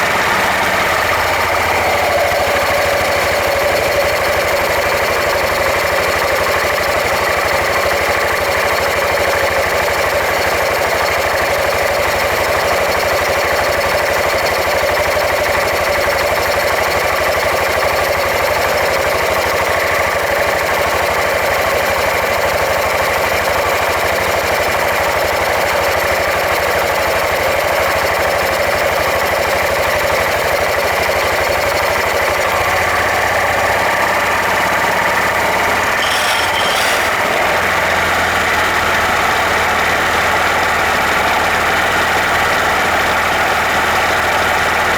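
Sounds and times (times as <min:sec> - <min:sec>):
scooter engine running: 0:00.0 - 0:44.9
rapid mechanical pulsing: 0:34.5 - 0:40.0.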